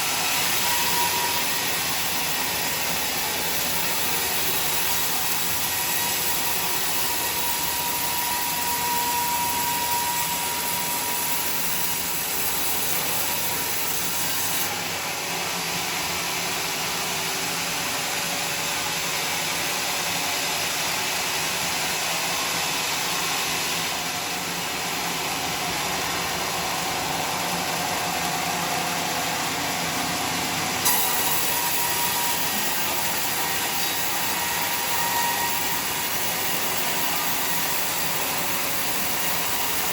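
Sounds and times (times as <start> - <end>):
sawmill saw cutting log: 0.0 - 14.7, 23.5 - 39.9.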